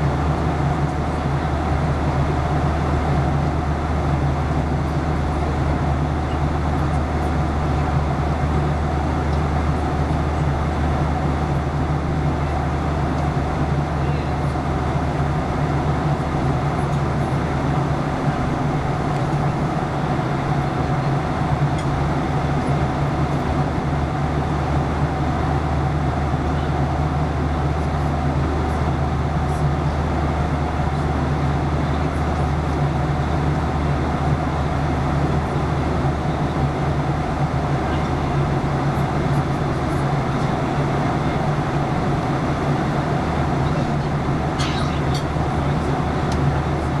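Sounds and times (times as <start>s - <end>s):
airplane cabin drone: 0.0s - 47.0s.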